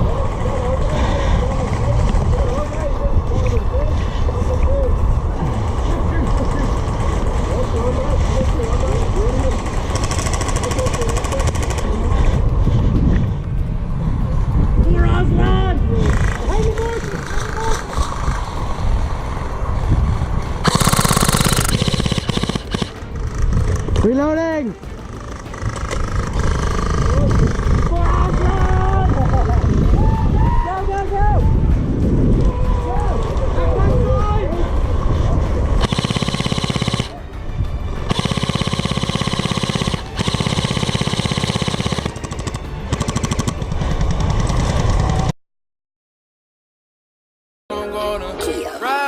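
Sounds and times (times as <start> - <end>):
airsoft gun firing: 20.6 - 23.4, 35.8 - 37.2, 38.1 - 44.8.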